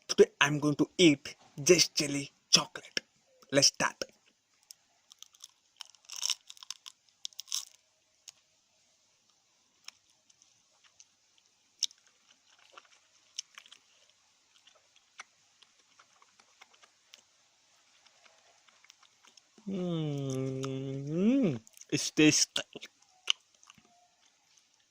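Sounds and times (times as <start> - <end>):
chocolate bar crunching: 4.7 - 8.4.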